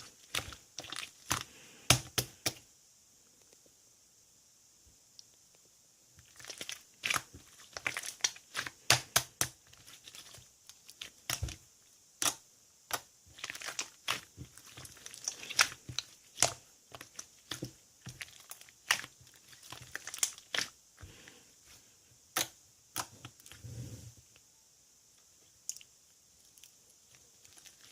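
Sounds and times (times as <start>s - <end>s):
slime popping and crackling: 0.0s - 2.6s, 6.2s - 11.6s, 12.2s - 20.8s.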